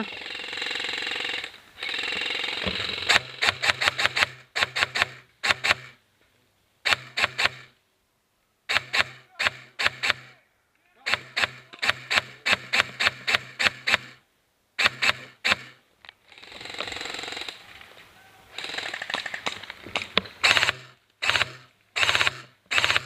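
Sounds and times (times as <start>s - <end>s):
airsoft gun firing: 0.6s - 6.0s, 6.8s - 7.7s, 8.7s - 10.4s, 11.1s - 14.2s, 14.8s - 15.8s, 20.4s - 23.0s.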